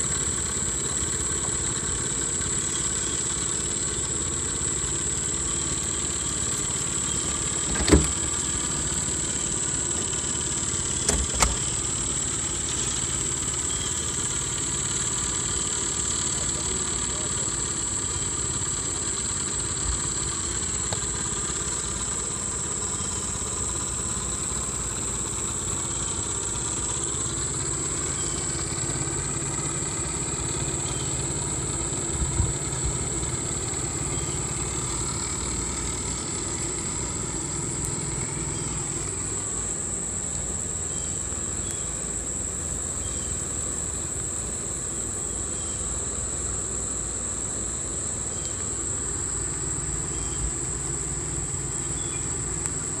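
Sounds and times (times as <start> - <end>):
distant engine drone: 0.0 - 53.0
high-pitched insect buzz: 19.9 - 53.0.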